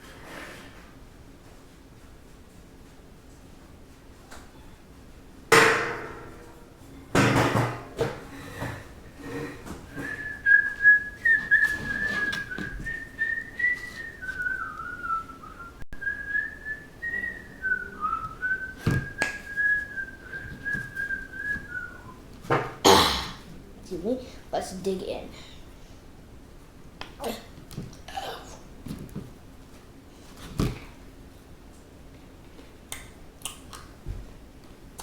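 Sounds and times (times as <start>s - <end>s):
sharp knocks: 5.5s - 6.6s, 7.2s - 8.2s
person whistling: 9.9s - 22.2s.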